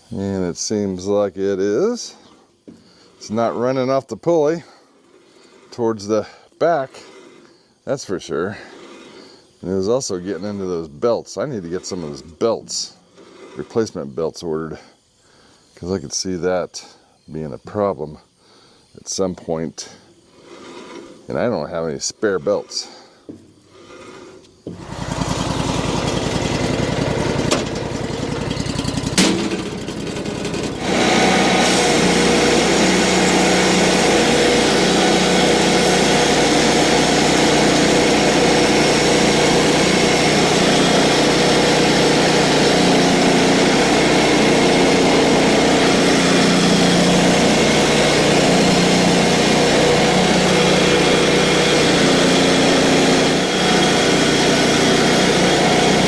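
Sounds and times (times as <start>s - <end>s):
small gasoline engine running: 23.7s - 56.0s.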